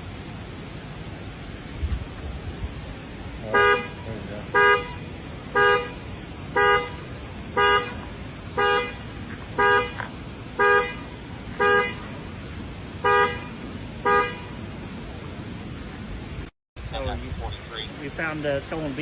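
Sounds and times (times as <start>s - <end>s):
car horn honking: 3.4s - 12.2s, 13.0s - 14.7s.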